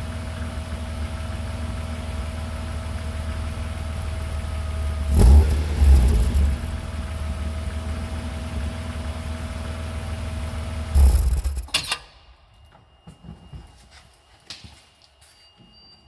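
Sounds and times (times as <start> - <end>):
car engine idling: 0.0 - 11.7.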